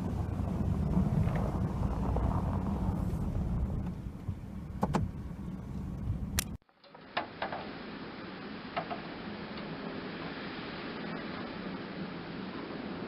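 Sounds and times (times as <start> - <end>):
wind buffeting microphone: 0.0 - 6.6.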